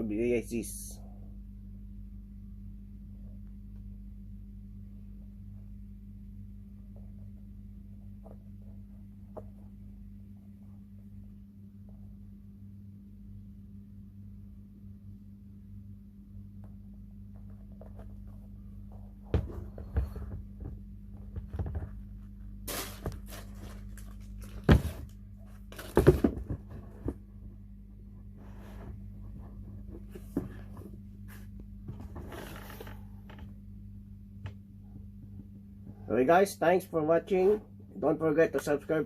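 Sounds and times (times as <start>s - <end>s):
steady low hum: 0.0s - 39.0s
rustling: 17.3s - 27.4s
sneakers knocking and thudding: 18.9s - 22.1s.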